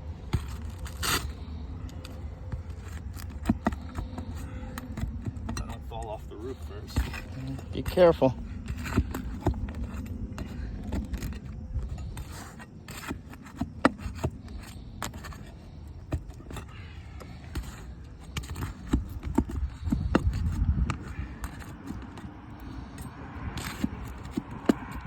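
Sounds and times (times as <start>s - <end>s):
tools scraping roof shingles: 0.1s - 25.0s.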